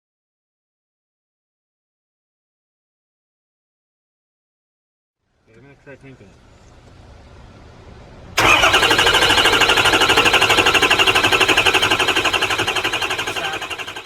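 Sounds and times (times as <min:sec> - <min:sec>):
diesel engine starter cranking: 0:08.4 - 0:14.0.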